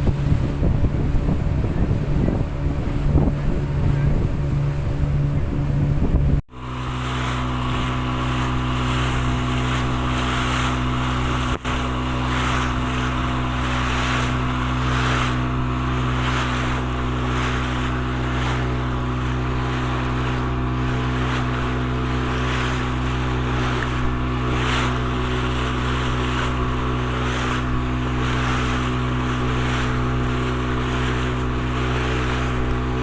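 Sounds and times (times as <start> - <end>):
wind noise: 0.0 - 6.4
boat engine running: 0.0 - 33.0
water wash: 0.0 - 33.0.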